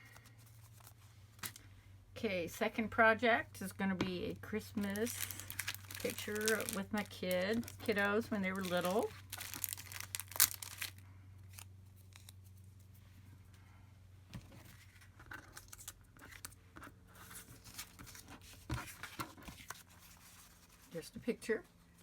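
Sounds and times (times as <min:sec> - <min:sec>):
paper rustling and crinkling: 0:00.0 - 0:01.6, 0:04.8 - 0:12.7, 0:14.5 - 0:21.0.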